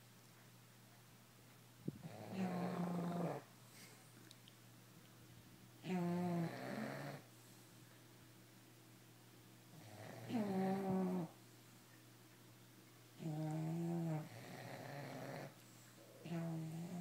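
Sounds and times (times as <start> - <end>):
dog snoring: 2.0 - 3.5, 5.8 - 7.3, 9.7 - 11.4, 13.2 - 15.6, 16.2 - 17.0.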